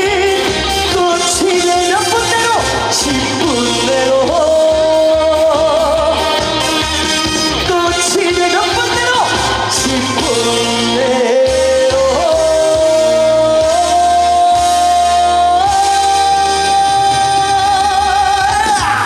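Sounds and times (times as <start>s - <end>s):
band playing: 0.0s - 19.0s
man singing long high note: 7.6s - 19.0s.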